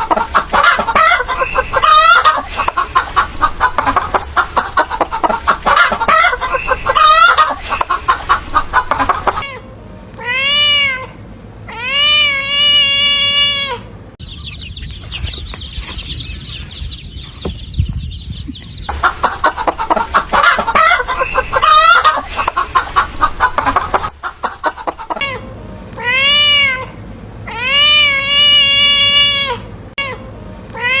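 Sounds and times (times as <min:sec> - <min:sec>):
hen clucking: 0:00.0 - 0:09.5, 0:14.2 - 0:25.4.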